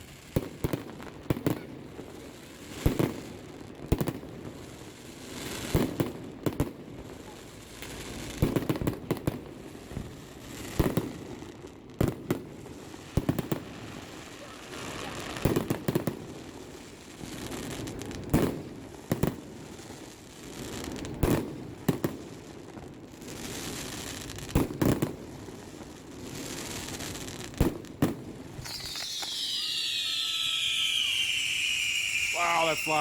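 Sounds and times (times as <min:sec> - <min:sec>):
fireworks crackling: 0:23.3 - 0:33.0
fireworks bangs: 0:28.0 - 0:33.0
high falling whistle: 0:28.6 - 0:33.0.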